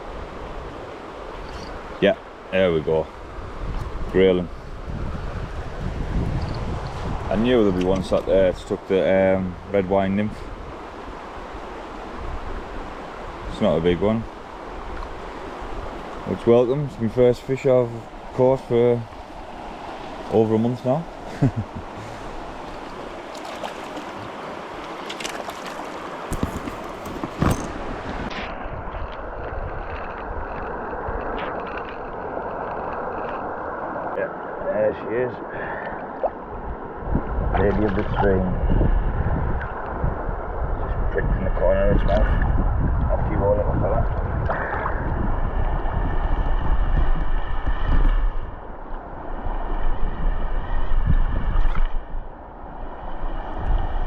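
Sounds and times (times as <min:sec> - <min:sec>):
river water flowing: 0:00.0 - 0:37.4
wind on microphone: 0:03.0 - 0:34.0, 0:36.0 - 0:54.0
river water rushing: 0:10.4 - 0:28.3
knocks and splashes: 0:22.6 - 0:30.2.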